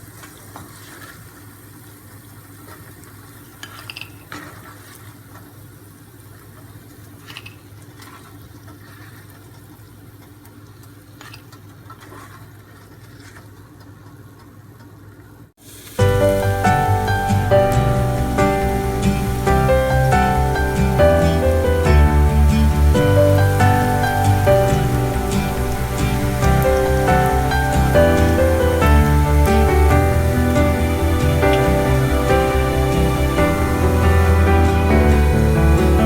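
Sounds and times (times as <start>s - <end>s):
food sizzling in hot oil: 15.6s - 36.0s
music: 16.0s - 36.0s.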